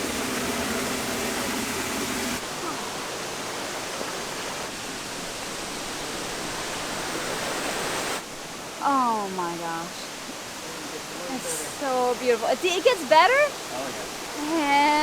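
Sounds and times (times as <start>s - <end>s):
waterfall rushing: 0.0s - 8.3s.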